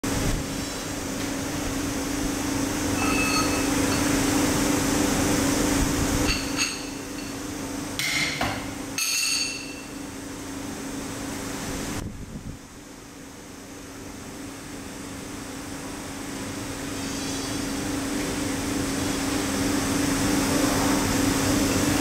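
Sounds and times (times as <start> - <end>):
sharp metallic pings: 3.0 - 3.7, 9.0 - 9.9.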